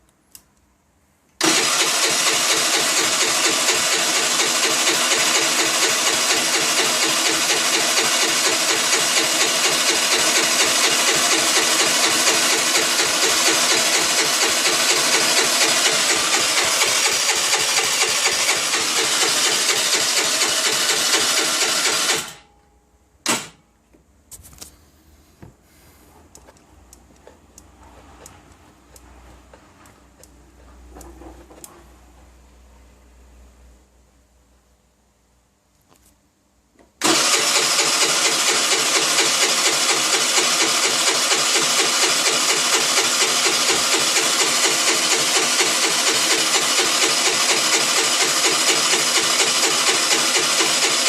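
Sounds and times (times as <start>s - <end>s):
scooter engine running: 1.4s - 22.3s, 37.0s - 51.0s.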